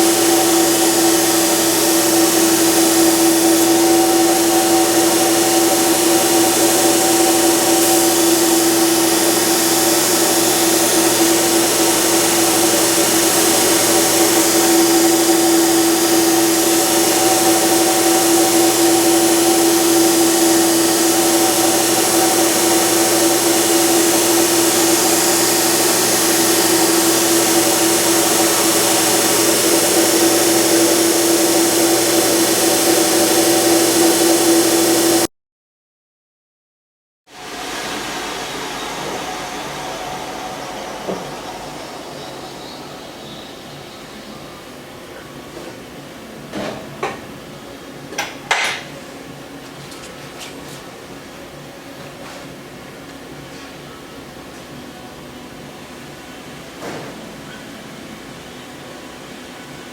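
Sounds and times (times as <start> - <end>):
belt grinder grinding metal: 0.0 - 35.3.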